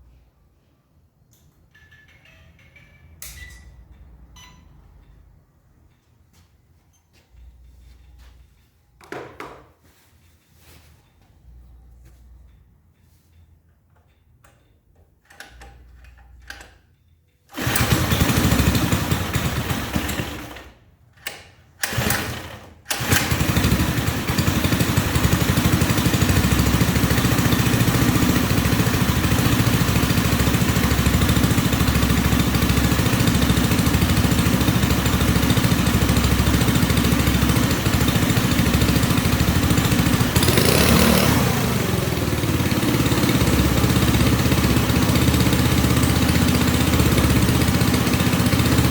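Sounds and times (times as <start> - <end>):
model bulldozer engine starting: 17.5 - 48.9.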